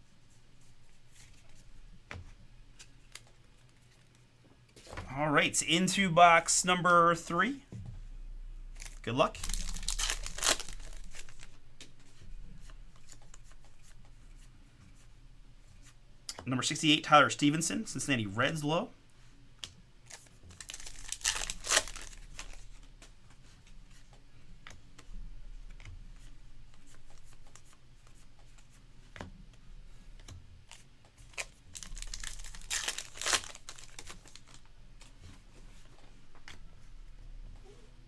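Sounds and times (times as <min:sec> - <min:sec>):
wrappers tearing and crinkling: 0:08.8 - 0:11.6, 0:20.1 - 0:22.7, 0:31.2 - 0:34.7
cards rustling: 0:08.8 - 0:14.0, 0:20.0 - 0:22.8, 0:30.7 - 0:36.6.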